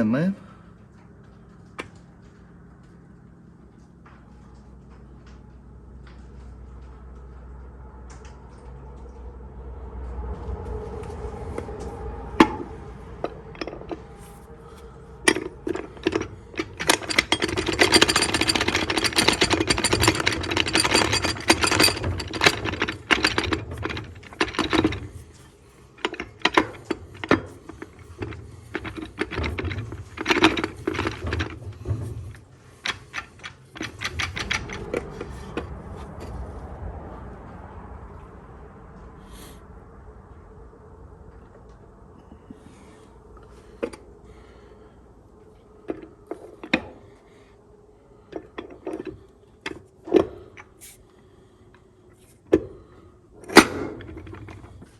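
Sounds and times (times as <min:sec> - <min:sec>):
steel parts clattering: 0:12.4 - 0:36.4.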